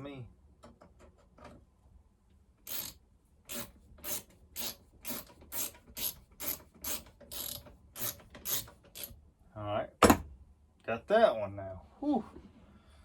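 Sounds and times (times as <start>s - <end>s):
hand ratchet clicking: 2.6s - 9.1s.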